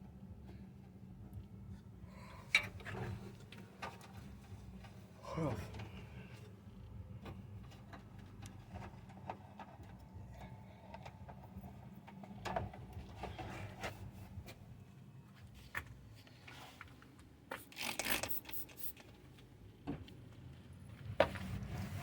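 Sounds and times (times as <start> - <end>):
rubbing and scraping: 21.2 - 22.0.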